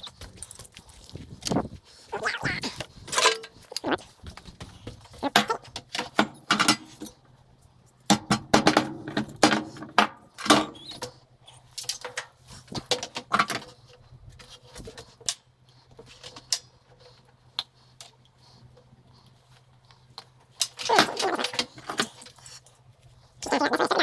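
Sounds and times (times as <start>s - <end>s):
scrap metal clinking and clattering: 3.0s - 3.9s, 20.6s - 22.8s.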